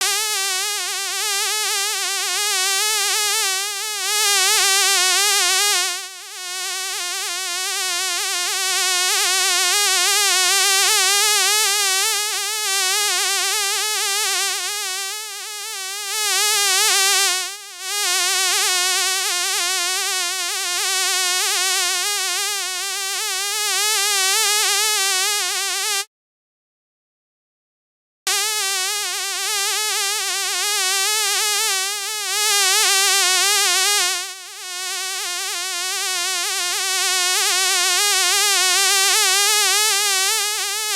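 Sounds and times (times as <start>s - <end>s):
fly buzzing: 0.0s - 6.0s, 13.1s - 26.1s, 28.3s - 37.8s.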